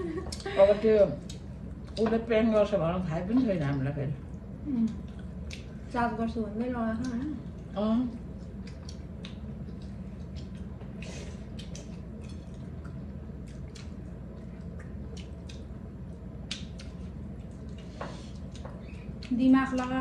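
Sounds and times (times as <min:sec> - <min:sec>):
steady low hum: 0:00.0 - 0:20.0
chewing mouth sounds: 0:08.3 - 0:19.9.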